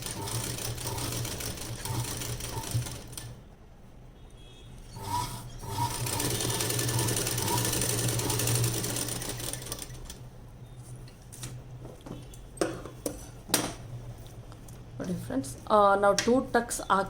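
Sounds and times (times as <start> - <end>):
sewing machine stitching: 0.0 - 3.4, 4.9 - 10.2.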